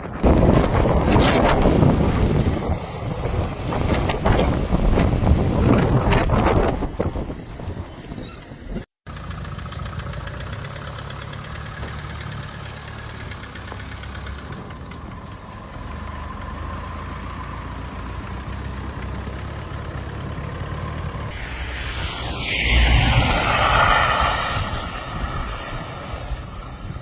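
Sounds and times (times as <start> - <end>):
vehicle engine running: 9.1 - 22.3
loud noisy sound: 21.3 - 27.0.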